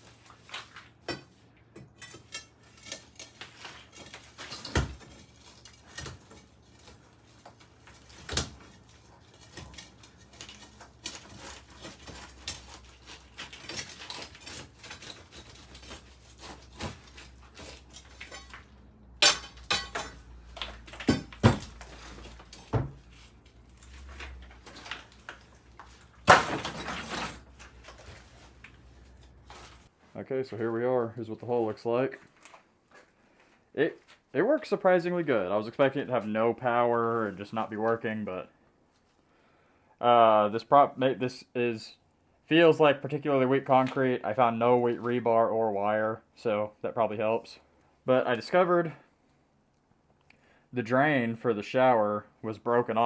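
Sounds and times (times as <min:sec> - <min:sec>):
concrete chunks knocking and clinking: 0:01.1 - 0:23.0, 0:23.8 - 0:28.1
scraping clatter: 0:02.0 - 0:29.9.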